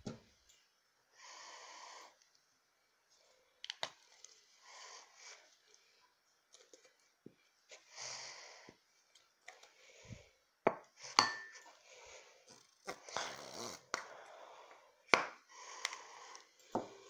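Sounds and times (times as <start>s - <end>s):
kitchenware clinking and knocking: 11.2s - 11.7s.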